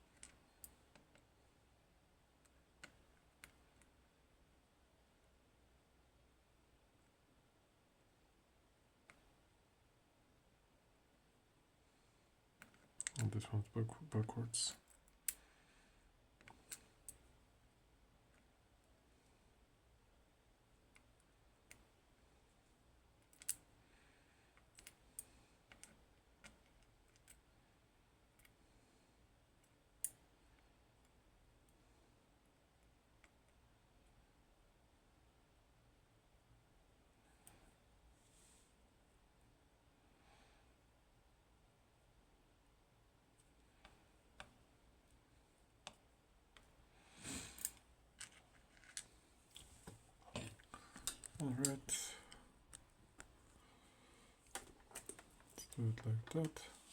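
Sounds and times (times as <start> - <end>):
small lock pins clicking: 23.2 - 23.6, 24.6 - 27.4
small metal parts clicking: 23.2 - 23.6.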